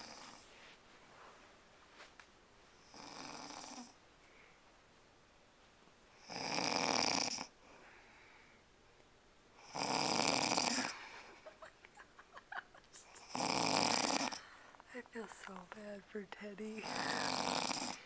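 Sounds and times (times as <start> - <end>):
woman snoring: 2.9 - 4.0, 6.3 - 7.5, 9.7 - 18.0.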